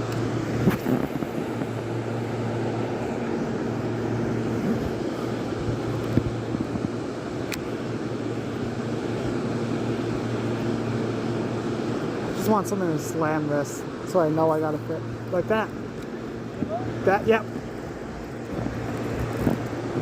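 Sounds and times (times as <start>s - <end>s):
steady machine drone: 0.0s - 20.0s.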